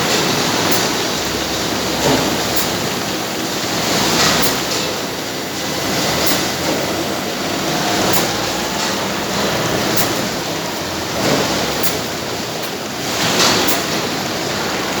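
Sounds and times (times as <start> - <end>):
production machine running: 0.0 - 15.0
light ticking: 0.6 - 5.2.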